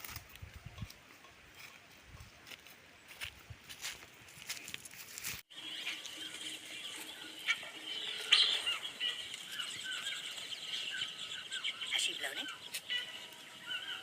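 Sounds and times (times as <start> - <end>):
small birds chirping: 5.5 - 14.0.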